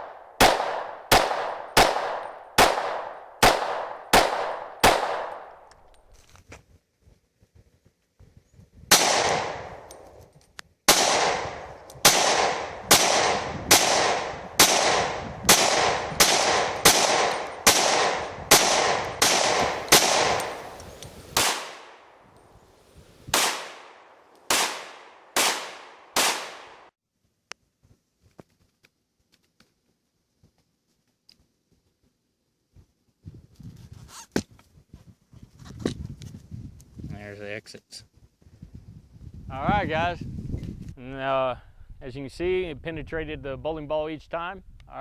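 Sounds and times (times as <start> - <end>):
pistol shots with echo: 0.0 - 5.9, 8.9 - 9.9, 10.9 - 26.9.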